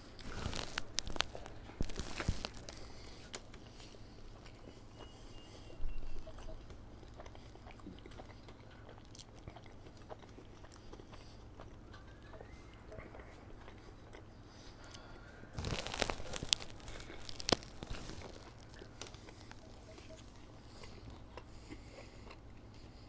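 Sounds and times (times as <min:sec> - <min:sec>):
paper packaging crinkling and tearing: 0:00.0 - 0:03.7, 0:15.6 - 0:20.5
quiet chewing: 0:00.0 - 0:23.0.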